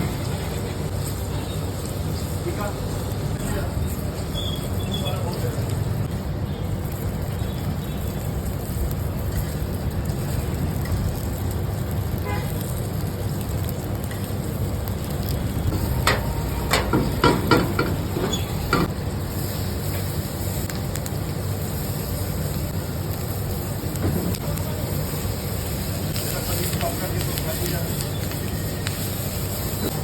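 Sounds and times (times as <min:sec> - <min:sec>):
food frying in a pan: 0:00.0 - 0:30.0
low rumble: 0:14.6 - 0:19.2
sharp knocks of pan: 0:15.8 - 0:18.9.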